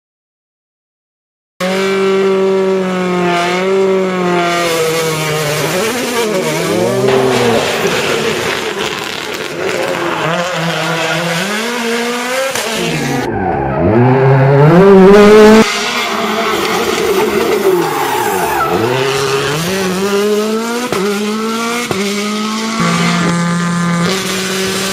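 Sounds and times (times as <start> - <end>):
rally car engines revving: 1.6 - 24.9
tyre squeal: 15.6 - 20.0.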